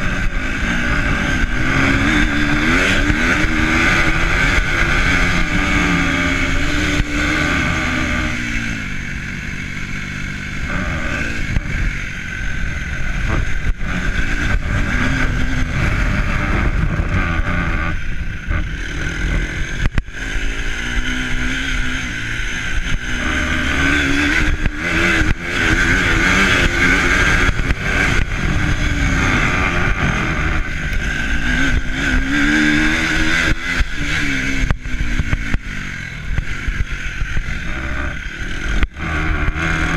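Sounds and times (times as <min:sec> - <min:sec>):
vehicle engine revving: 0:00.0 - 0:39.9
wind rumble on microphone: 0:12.8 - 0:20.2.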